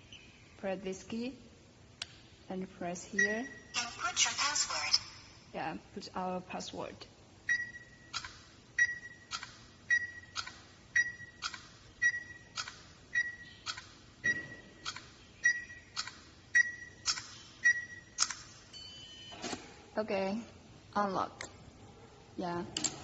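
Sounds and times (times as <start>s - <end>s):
keypad beeps: 7.5s - 19.4s.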